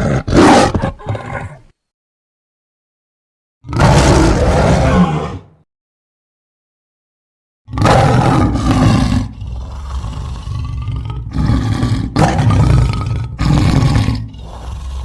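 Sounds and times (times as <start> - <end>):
lion roaring: 0.0 - 1.6, 3.6 - 5.6, 7.7 - 15.0
lion rumbling: 3.6 - 5.5, 7.7 - 15.0.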